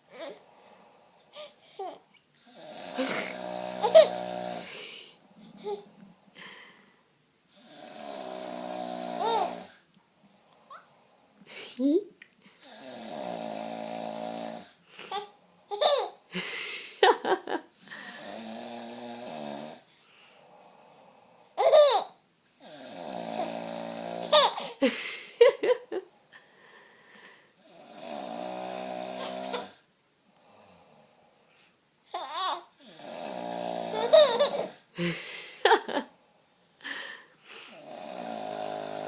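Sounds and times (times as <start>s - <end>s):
man snoring: 2.4s - 5.1s, 7.5s - 9.8s, 12.6s - 14.8s, 17.8s - 21.4s, 22.6s - 24.4s, 27.6s - 29.8s, 32.8s - 36.0s, 36.9s - 39.0s
baby laughing and squealing: 3.0s - 4.2s, 9.2s - 9.6s, 15.1s - 16.2s, 21.6s - 22.1s, 24.3s - 24.8s, 32.2s - 32.7s, 33.9s - 34.8s.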